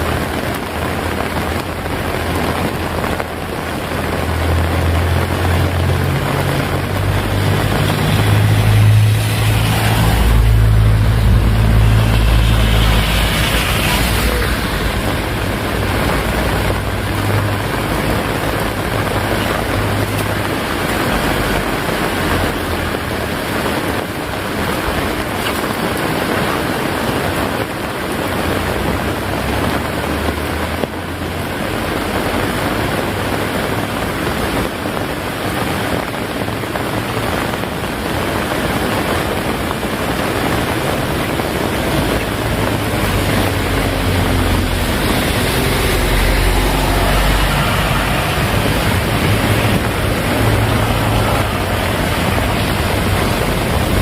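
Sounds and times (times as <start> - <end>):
heavy rain pouring: 0.0 - 54.0
low rumble: 0.2 - 22.0, 41.8 - 54.0.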